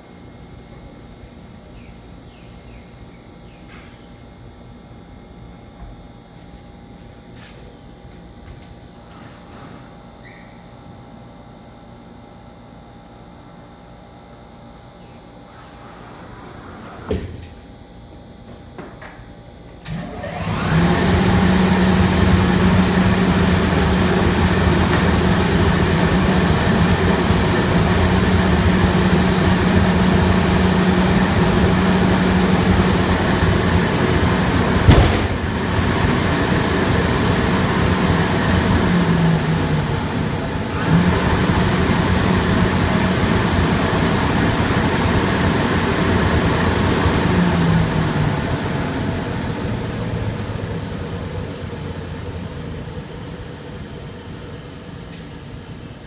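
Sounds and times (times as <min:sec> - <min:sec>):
machine humming with hiss: 0:19.9 - 0:54.5.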